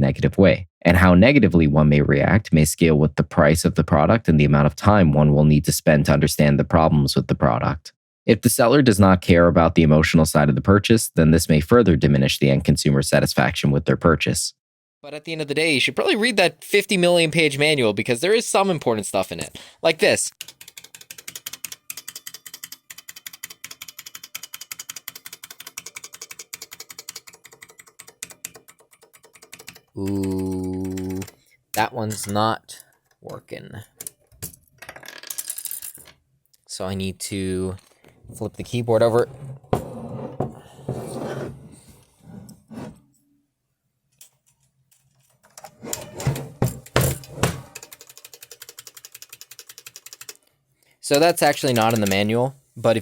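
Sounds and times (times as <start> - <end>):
keyboard keys clicking: 20.4 - 32.5, 47.7 - 50.4, 51.1 - 52.3
clicks and knocks: 45.4 - 47.9.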